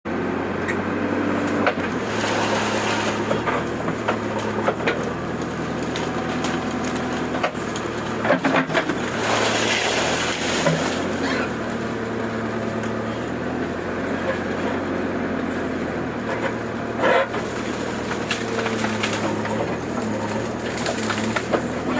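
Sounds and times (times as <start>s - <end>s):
diesel engine running: 0.0s - 21.9s
wood cracking and snapping: 1.5s - 11.9s, 16.2s - 21.9s.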